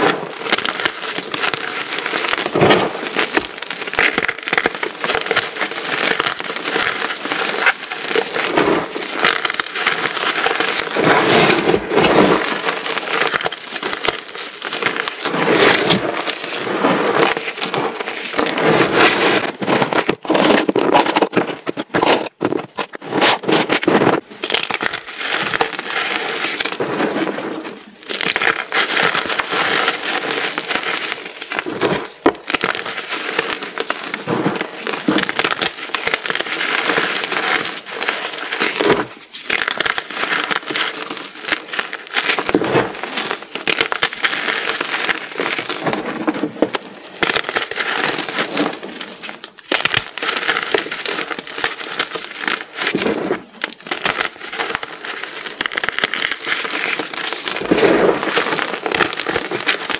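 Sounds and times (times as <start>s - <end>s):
chalk blocks crunching: 0.0s - 59.9s.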